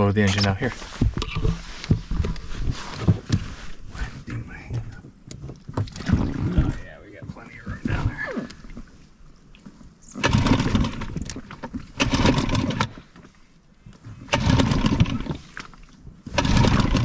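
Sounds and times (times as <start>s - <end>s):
outboard motor running roughly: 10.1s - 17.0s.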